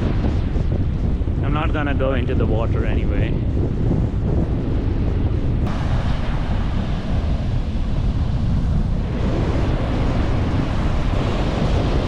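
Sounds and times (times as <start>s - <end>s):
wind buffeting microphone: 0.0s - 12.0s
surf breaking on beach: 5.7s - 12.0s.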